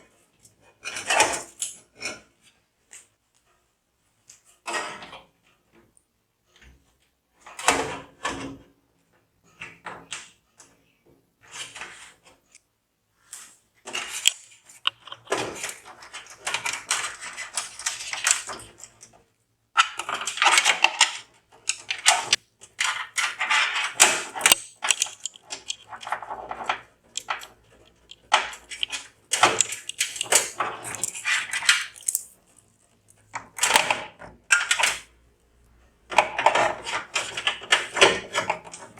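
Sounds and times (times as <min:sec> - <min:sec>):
hands handling computer parts: 0:13.8 - 0:19.1, 0:19.8 - 0:35.1.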